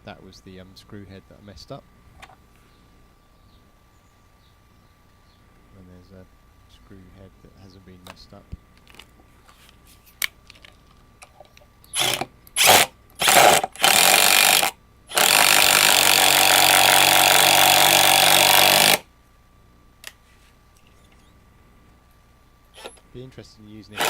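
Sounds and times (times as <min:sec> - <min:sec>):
cordless impact driver running: 0:12.0 - 0:19.0, 0:22.8 - 0:23.0.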